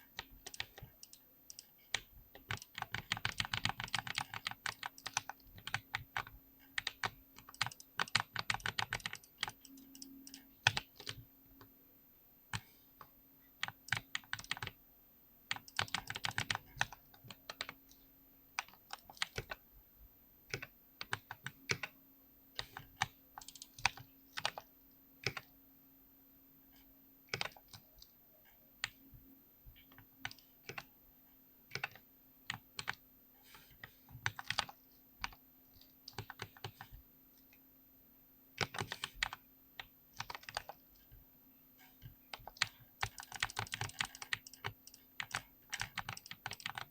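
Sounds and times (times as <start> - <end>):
keyboard typing clicks: 0.0 - 11.7, 12.5 - 14.8, 15.5 - 18.0, 18.6 - 19.6, 20.5 - 22.0, 22.6 - 25.6, 27.3 - 29.0, 29.8 - 30.9, 31.7 - 33.0, 33.8 - 37.0, 38.6 - 41.2, 42.0 - 46.9
faint low hum: 0.0 - 46.9.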